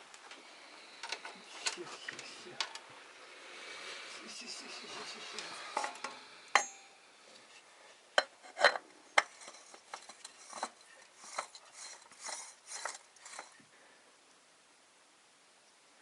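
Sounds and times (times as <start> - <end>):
metal tools clinking: 5.7 - 7.0, 8.2 - 13.6.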